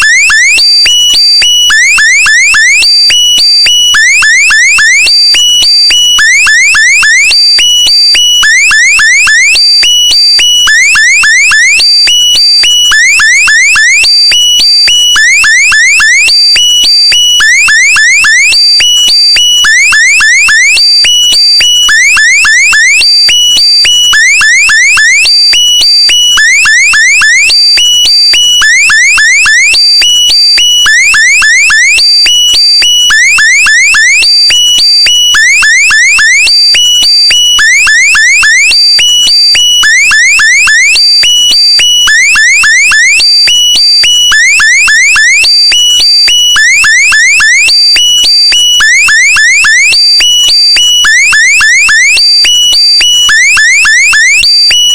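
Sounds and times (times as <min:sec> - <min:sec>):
rising electronic alarm chirps: 0:00.0 - 0:00.6, 0:33.1 - 0:34.3, 0:35.3 - 0:36.6, 0:37.6 - 0:38.8, 0:39.8 - 0:41.0, 0:42.1 - 0:43.2, 0:48.8 - 0:50.0, 0:51.0 - 0:52.2, 0:53.3 - 0:54.4.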